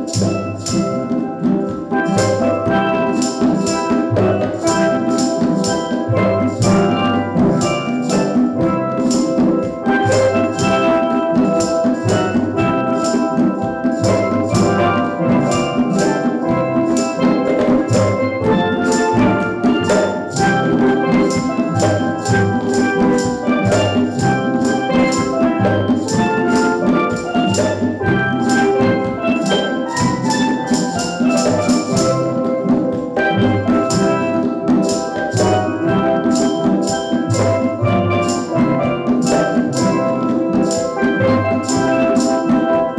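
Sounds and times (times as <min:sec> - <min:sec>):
steady percussion beat: 0:00.0 - 0:42.9
steel drum band playing: 0:00.0 - 0:42.9.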